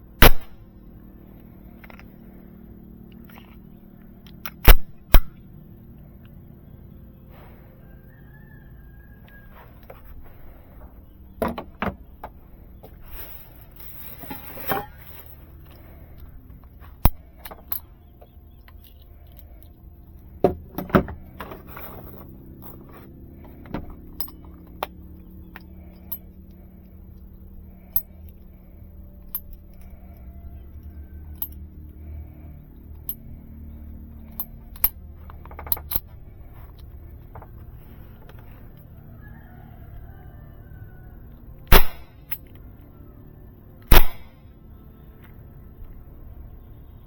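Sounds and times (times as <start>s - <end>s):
pistol clicks and metallic clinks: 0.2s - 0.6s, 1.7s - 5.6s, 17.0s - 20.9s, 24.0s - 32.0s, 32.9s - 36.2s, 41.7s - 42.7s, 43.8s - 44.4s
sharp snaps: 0.2s - 0.6s, 4.2s - 5.5s, 41.7s - 42.6s, 43.8s - 44.4s.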